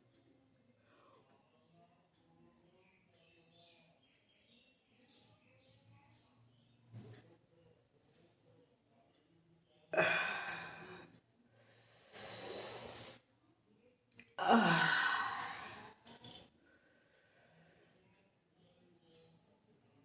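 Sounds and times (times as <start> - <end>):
person yawning: 10.0 - 11.0, 14.4 - 16.4
noisy breath: 10.0 - 13.2, 14.5 - 18.0.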